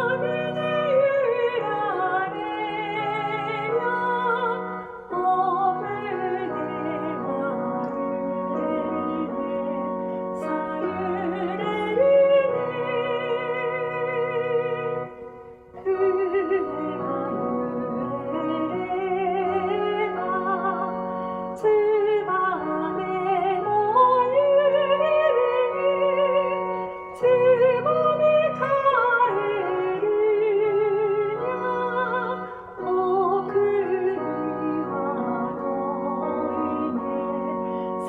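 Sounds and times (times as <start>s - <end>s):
piano accompaniment: 0.0s - 38.0s
woman singing with vibrato: 0.0s - 38.0s.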